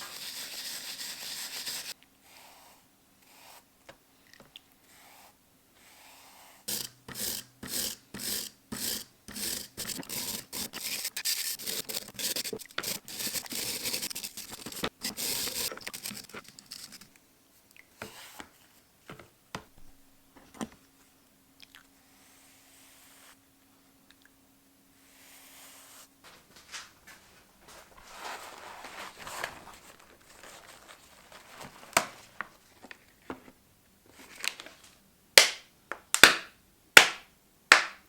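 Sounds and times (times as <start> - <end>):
hand scraping strokes: 0.0 - 3.7, 4.9 - 17.1.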